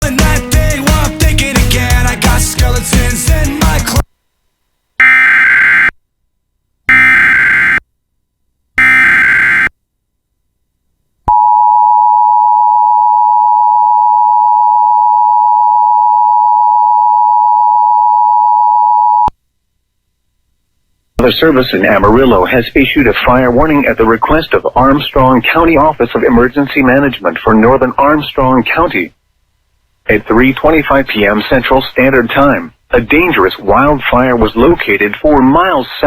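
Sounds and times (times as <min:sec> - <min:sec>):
digital data screeching: 0:08.8 - 0:09.7.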